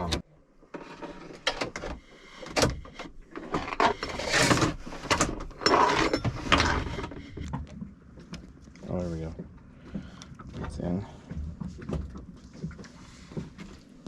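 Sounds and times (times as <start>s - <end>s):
cable scraping in metal mechanism: 3.0s - 7.3s.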